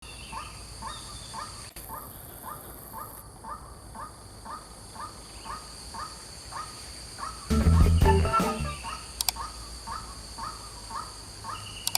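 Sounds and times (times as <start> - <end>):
high-pitched background drone: 7.5 - 9.0.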